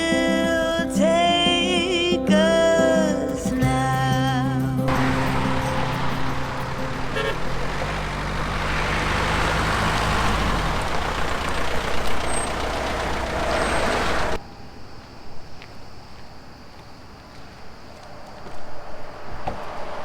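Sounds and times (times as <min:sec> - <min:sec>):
vehicle engine and road noise: 0:04.8 - 0:14.4, 0:17.1 - 0:20.0.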